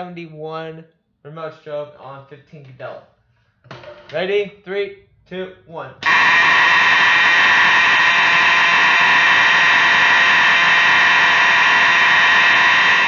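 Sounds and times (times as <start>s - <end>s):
fire alarm horn buzzing: 6.0s - 13.0s.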